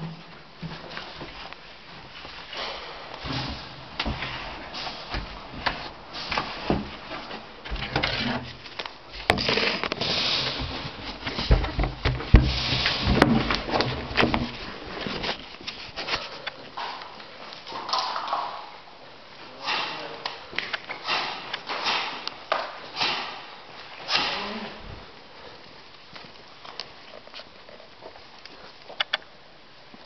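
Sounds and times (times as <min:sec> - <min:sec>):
microphone handling thumps: 0:10.6 - 0:16.2.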